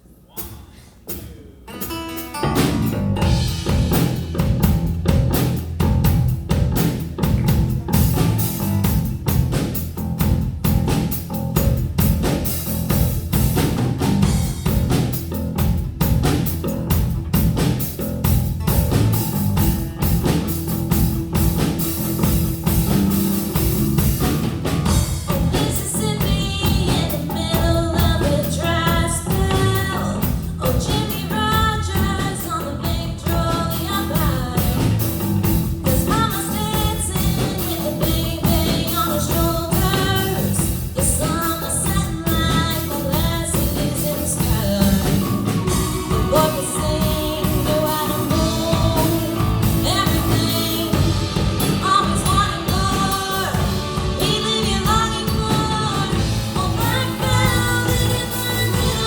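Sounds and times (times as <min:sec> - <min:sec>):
rock music with drums and guitar: 0:01.7 - 0:59.0
person singing: 0:35.8 - 0:59.0.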